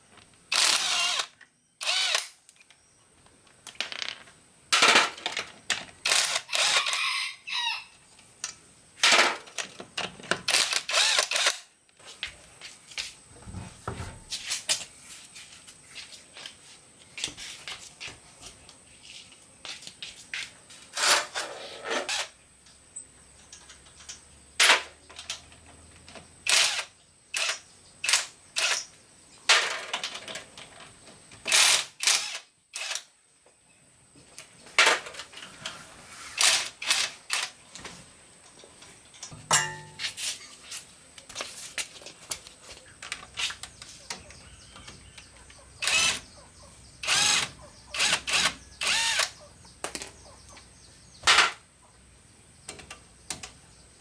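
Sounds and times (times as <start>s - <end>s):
metal tools clanking: 39.2s - 40.3s.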